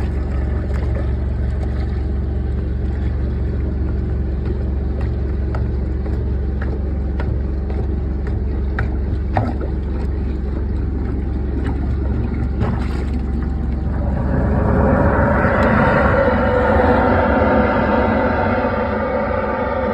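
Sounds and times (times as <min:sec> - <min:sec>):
low motor drone: 0:00.0 - 0:19.9
rushing noise: 0:13.6 - 0:19.9.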